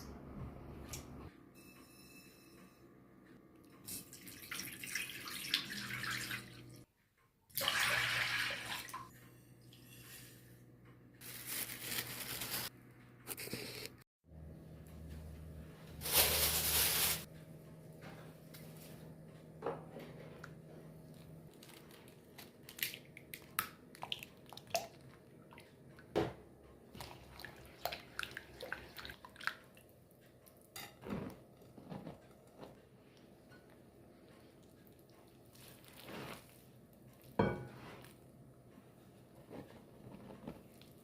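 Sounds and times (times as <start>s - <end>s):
dough squishing: 34.4s - 38.3s.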